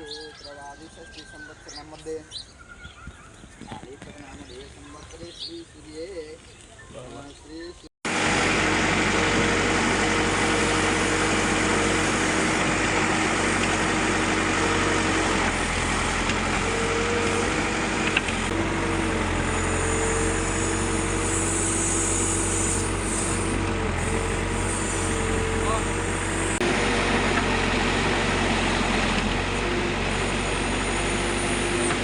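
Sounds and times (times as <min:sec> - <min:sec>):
diesel engine running: 0:08.1 - 0:32.0.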